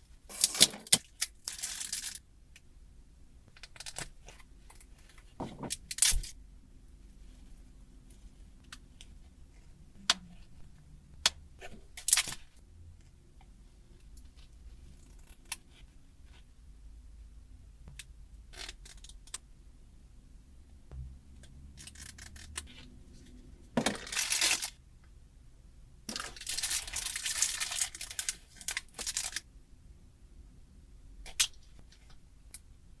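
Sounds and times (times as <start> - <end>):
packaging rustling: 23.8 - 24.8, 26.1 - 29.4.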